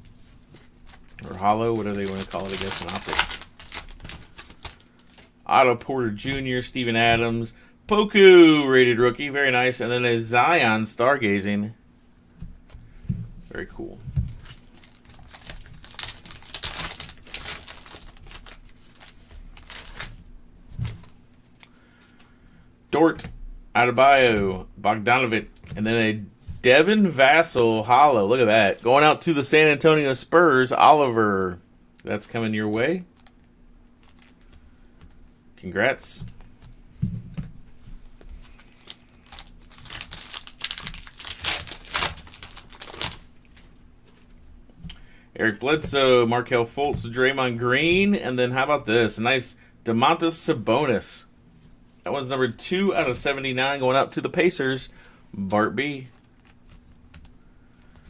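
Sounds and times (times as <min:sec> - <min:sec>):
cards being handled: 0:00.2 - 0:05.4, 0:14.3 - 0:20.2, 0:38.3 - 0:44.3
wrapper crinkling and tearing: 0:00.7 - 0:05.3, 0:14.4 - 0:20.2, 0:38.4 - 0:43.7.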